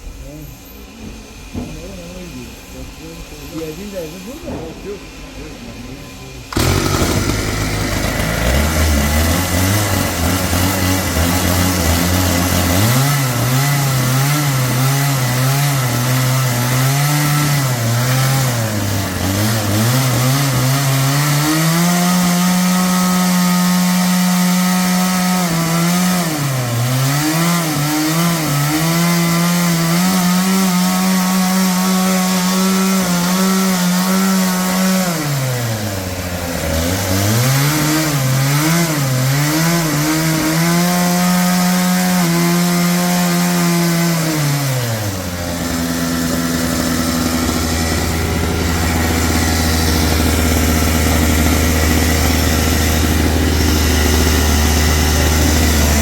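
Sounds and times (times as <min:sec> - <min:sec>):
engine saw cutting log: 0:00.0 - 0:56.0.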